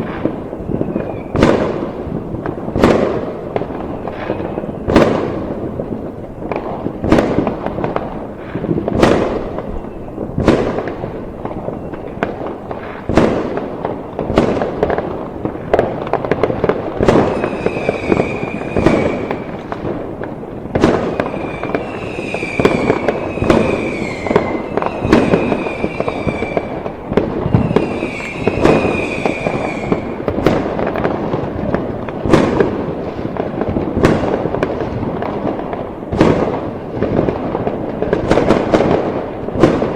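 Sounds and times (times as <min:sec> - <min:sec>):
fireworks bangs: 0:00.0 - 0:39.9
fireworks crackling: 0:00.0 - 0:39.9
fireworks whistling: 0:00.0 - 0:39.9.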